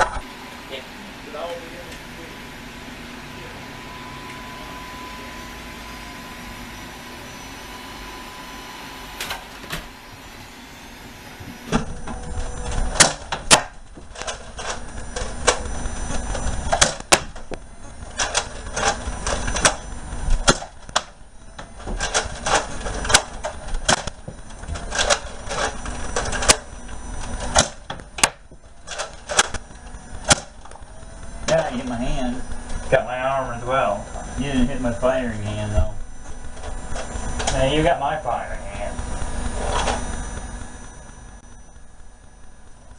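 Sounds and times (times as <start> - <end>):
toy dart blasters clicking: 27.5 - 29.6.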